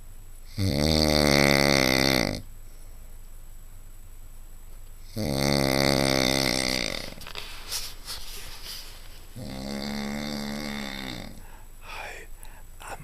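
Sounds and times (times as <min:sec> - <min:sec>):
man snoring heavily: 0:00.5 - 0:02.4, 0:05.1 - 0:07.2, 0:09.4 - 0:12.3
quiet breathing: 0:02.6 - 0:03.3, 0:06.2 - 0:13.0.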